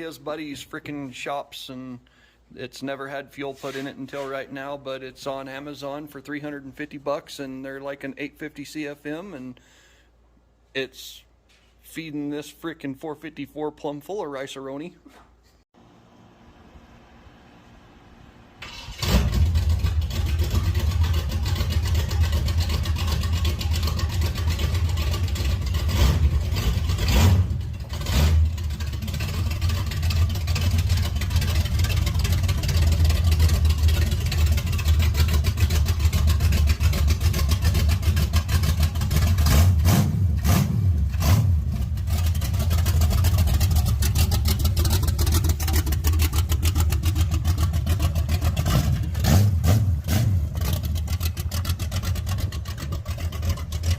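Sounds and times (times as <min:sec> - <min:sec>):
car engine running: 0:19.0 - 0:53.9.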